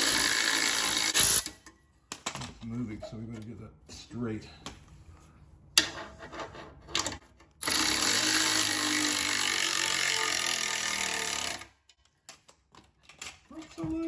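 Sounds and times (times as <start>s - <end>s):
electric ratchet running: 7.6s - 11.7s.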